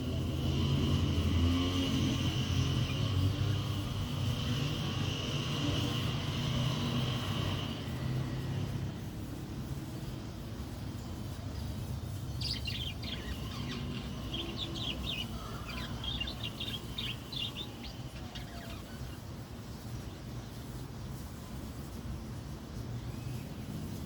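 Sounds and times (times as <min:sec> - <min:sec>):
low background hum: 0:00.0 - 0:22.4
lovebirds chirping: 0:11.1 - 0:19.9.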